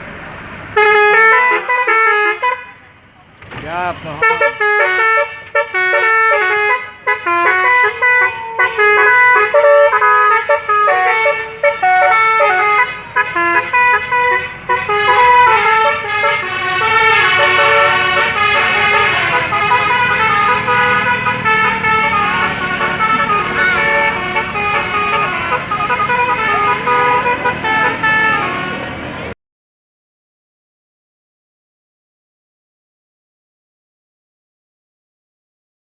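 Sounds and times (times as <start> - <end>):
bus musical air horn melody: 0.7 - 2.8, 4.2 - 29.4.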